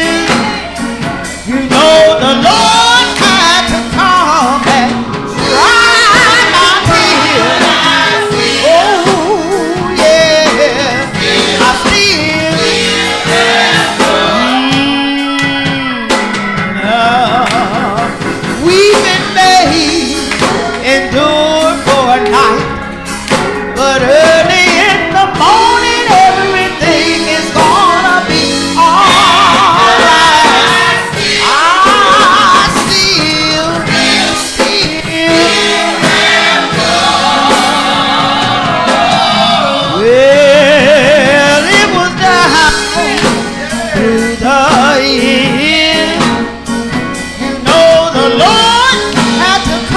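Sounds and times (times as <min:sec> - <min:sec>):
lead singer voice: 0:00.0 - 0:23.0, 0:23.7 - 0:49.9
gospel choir singing: 0:00.0 - 0:49.9
instrumental accompaniment: 0:00.0 - 0:49.9.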